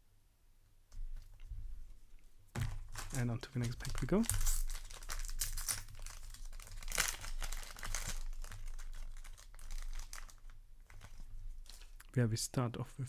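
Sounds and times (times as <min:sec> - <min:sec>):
wrapper tearing and crinkling: 0:02.6 - 0:12.1.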